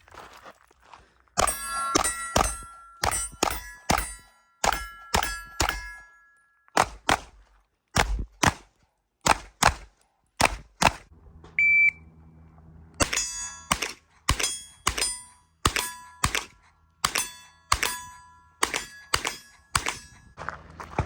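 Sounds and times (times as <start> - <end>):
steel plates ringing: 1.4 - 6.7, 13.0 - 20.4
rapid gunfire: 9.3 - 11.1
electronic beep: 11.6 - 12.0.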